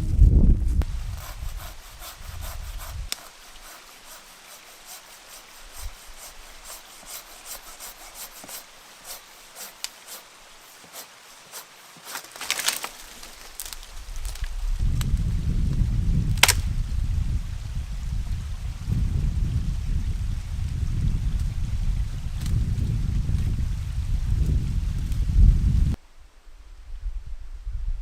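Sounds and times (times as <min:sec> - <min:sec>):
wind buffeting microphone: 0:00.0 - 0:03.2, 0:13.8 - 0:26.0, 0:26.7 - 0:28.0
hand saw rasping through wood: 0:01.0 - 0:12.8.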